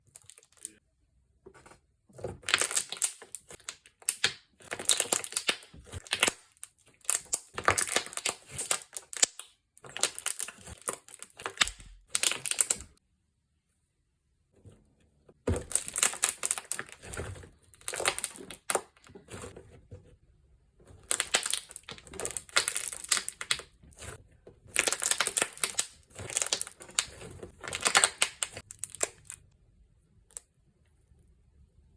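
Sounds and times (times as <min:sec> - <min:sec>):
slime popping and crackling: 0:02.5 - 0:13.0, 0:15.6 - 0:17.2, 0:17.8 - 0:18.9, 0:21.0 - 0:24.1, 0:24.7 - 0:29.4.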